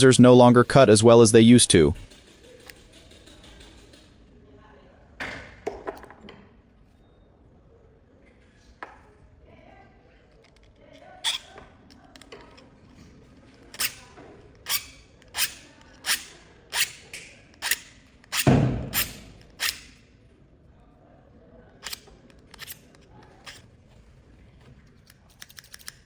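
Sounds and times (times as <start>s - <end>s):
scissors snipping: 25.1s - 26.0s.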